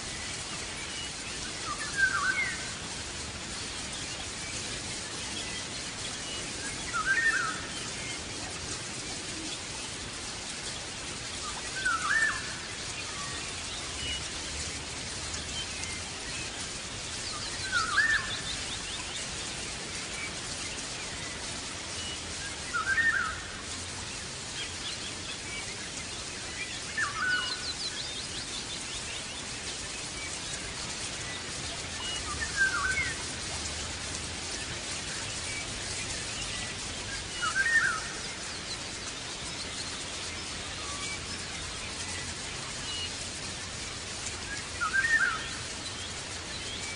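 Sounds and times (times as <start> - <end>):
steady hiss: 0.0 - 46.9
songbird swooping call: 11.8 - 12.5, 44.8 - 45.6.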